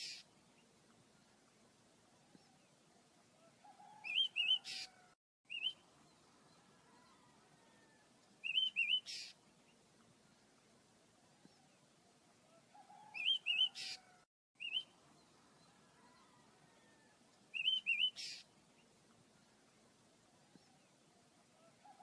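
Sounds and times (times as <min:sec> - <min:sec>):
brief hiss: 0:00.0 - 0:00.2.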